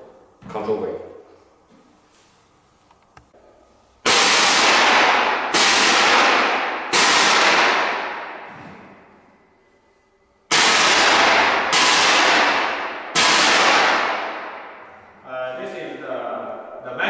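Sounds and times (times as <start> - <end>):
loud gas blast hiss: 4.1 - 8.0, 10.5 - 14.4.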